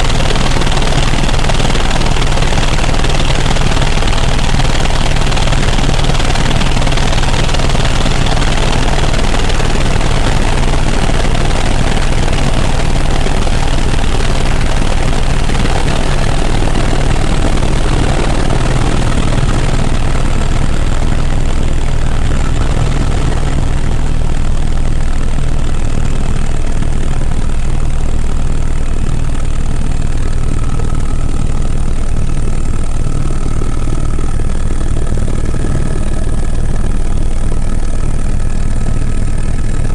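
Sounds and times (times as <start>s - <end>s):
helicopter turbine and rotor: 0.0s - 39.9s.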